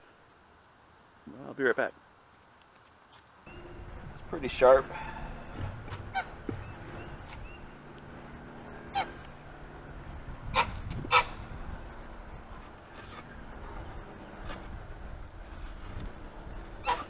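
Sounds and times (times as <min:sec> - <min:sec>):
low steady drone: 0:03.5 - 0:17.0
goose honking: 0:03.8 - 0:07.2, 0:08.6 - 0:09.3, 0:10.5 - 0:11.4, 0:16.8 - 0:17.0.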